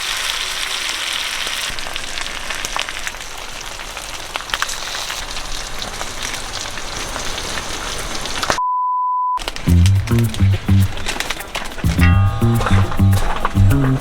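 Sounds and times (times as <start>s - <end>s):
meat sizzling on grill pan: 0.0s - 8.5s.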